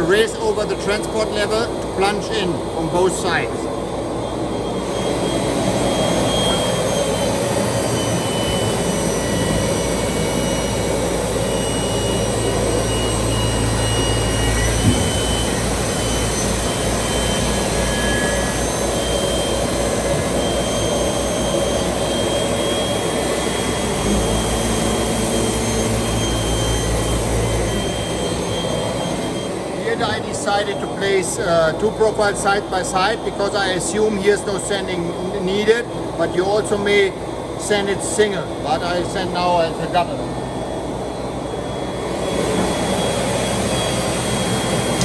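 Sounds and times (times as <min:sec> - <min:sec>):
sanding machine running: 0:04.4 - 0:29.8.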